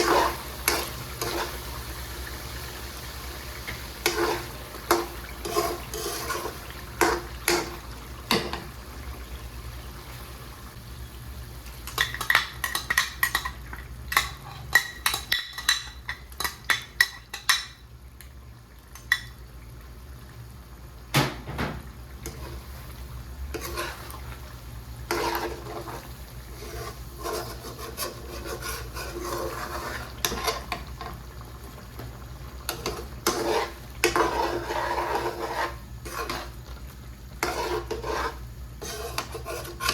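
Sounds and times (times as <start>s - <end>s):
metal utensil stirring in pan: 0.0s - 2.2s, 3.7s - 8.6s, 11.9s - 17.8s, 23.5s - 24.3s, 25.0s - 31.2s, 32.6s - 36.8s, 37.4s - 39.9s.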